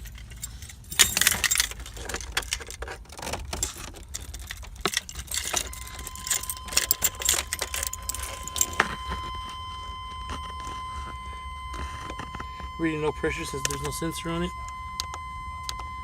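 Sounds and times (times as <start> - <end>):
small metal parts jangling: 0.0 - 9.0
high electronic tone: 5.5 - 16.0.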